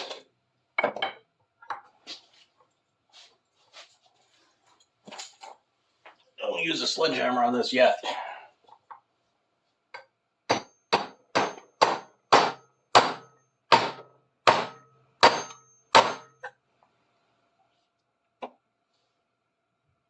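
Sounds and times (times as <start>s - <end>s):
hammer striking steel wrench: 10.5s - 16.5s.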